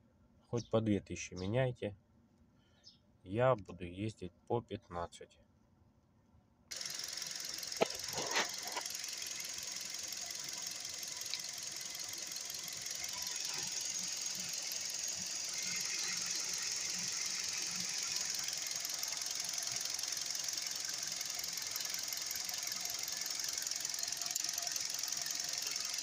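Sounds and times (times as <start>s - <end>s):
car engine running: 6.7s - 26.0s.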